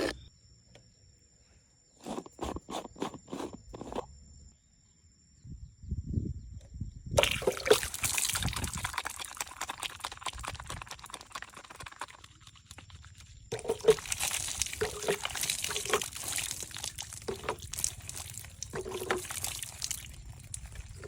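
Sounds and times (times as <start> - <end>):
water pouring and splashing: 7.2 - 21.0.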